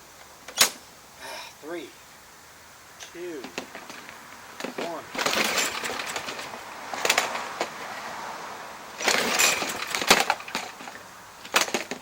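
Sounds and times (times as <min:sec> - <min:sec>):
mower engine cranking: 0:03.4 - 0:07.6, 0:09.0 - 0:12.0.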